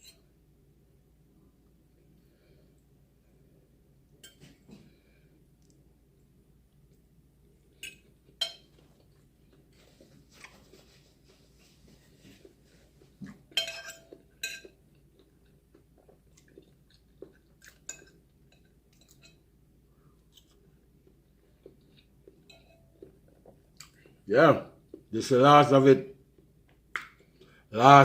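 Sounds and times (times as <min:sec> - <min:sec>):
person chewing food: 0:05.6 - 0:24.2, 0:24.8 - 0:25.1
cutlery clinking on a plate: 0:07.8 - 0:08.8, 0:13.5 - 0:14.8, 0:22.4 - 0:22.9.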